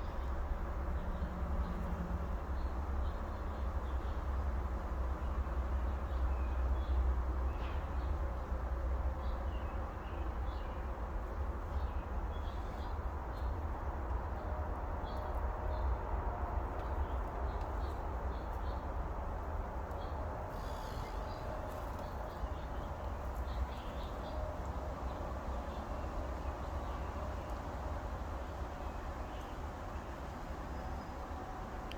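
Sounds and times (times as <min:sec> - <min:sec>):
faint bird chirps: 0:20.5 - 0:22.7.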